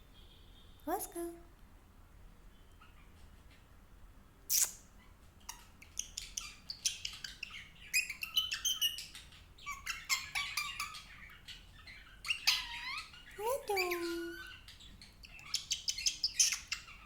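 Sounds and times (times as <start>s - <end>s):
parakeet chirping: 4.5s - 17.0s.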